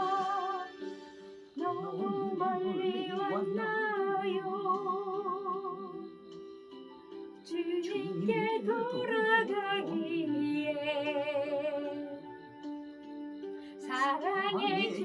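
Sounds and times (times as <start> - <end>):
woman singing with vibrato: 0.0 - 1.0, 1.6 - 6.0, 7.5 - 12.2, 13.8 - 15.0
keyboard accompaniment: 0.0 - 15.0.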